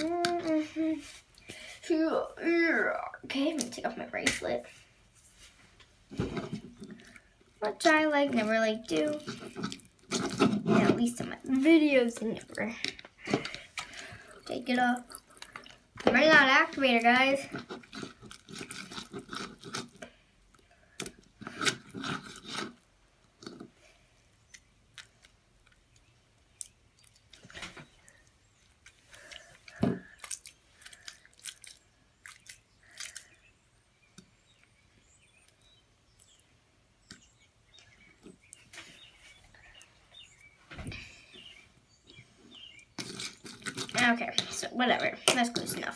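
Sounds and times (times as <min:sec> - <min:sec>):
slime squelching under a spoon: 0:06.8 - 0:22.7, 0:24.3 - 0:36.4.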